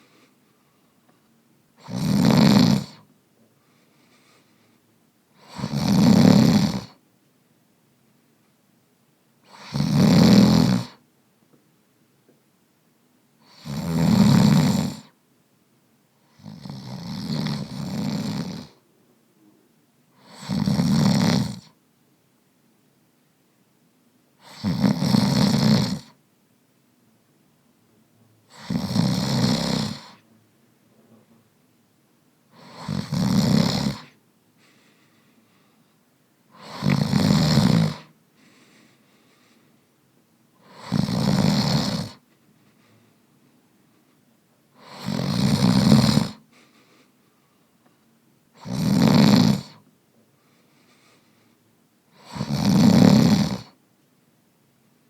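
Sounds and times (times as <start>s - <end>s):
faint breaths: 0.0s - 1.3s, 2.9s - 5.5s, 34.0s - 40.0s, 42.0s - 45.1s, 46.3s - 48.1s, 49.7s - 52.3s
man snoring: 1.8s - 3.0s, 5.4s - 7.0s, 9.4s - 11.0s, 13.4s - 15.1s, 16.3s - 18.8s, 20.2s - 21.7s, 24.4s - 26.1s, 28.5s - 30.2s, 32.5s - 34.1s, 36.5s - 38.2s, 40.6s - 42.2s, 44.8s - 46.4s, 48.6s - 49.8s, 52.1s - 53.8s.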